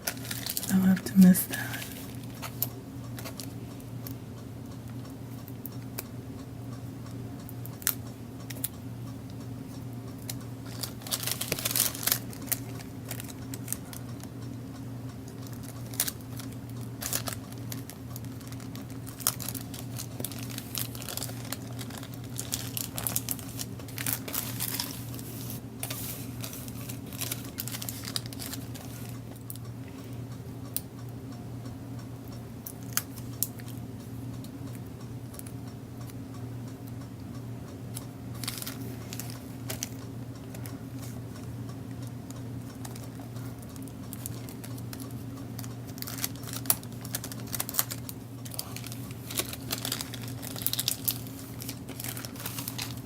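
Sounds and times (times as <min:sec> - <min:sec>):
cellophane and paper crinkling: 0:00.0 - 0:02.6, 0:10.6 - 0:14.3, 0:15.4 - 0:29.3, 0:38.4 - 0:40.0, 0:42.8 - 0:53.0
low electrical hum: 0:00.0 - 0:53.0.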